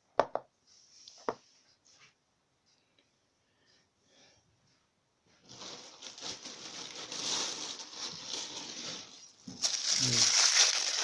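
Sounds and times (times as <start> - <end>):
packaging crinkling and rustling: 5.4 - 11.0.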